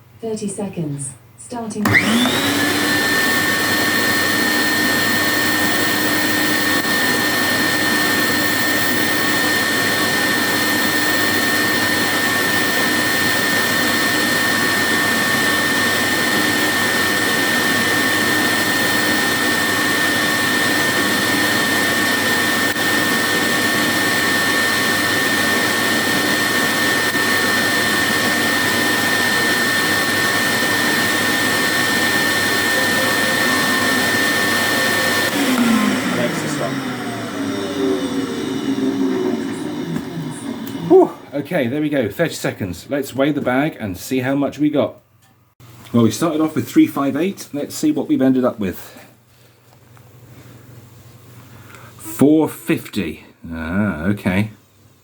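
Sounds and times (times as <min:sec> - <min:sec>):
vacuum cleaner motor whining: 0:01.8 - 0:41.4.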